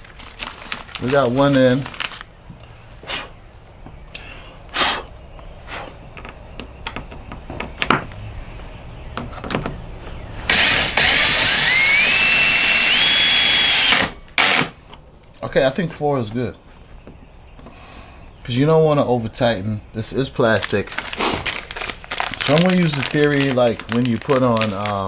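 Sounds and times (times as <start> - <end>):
clicks and knocks of handling parts: 9.2 - 9.8
power drill driving a screw: 10.5 - 14.8.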